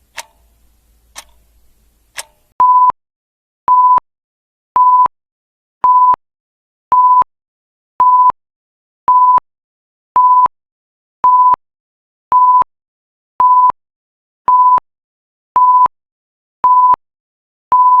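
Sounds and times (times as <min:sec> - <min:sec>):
electronic timer alarm beeps: 0:02.6 - 0:03.0, 0:03.7 - 0:04.0, 0:04.8 - 0:05.1, 0:06.9 - 0:07.3, 0:08.0 - 0:08.4, 0:09.1 - 0:09.4, 0:10.2 - 0:10.5, 0:11.2 - 0:11.6, 0:12.3 - 0:12.7, 0:13.4 - 0:13.8, 0:14.5 - 0:14.8, 0:15.6 - 0:15.9, 0:16.6 - 0:17.0, 0:17.7 - 0:18.0.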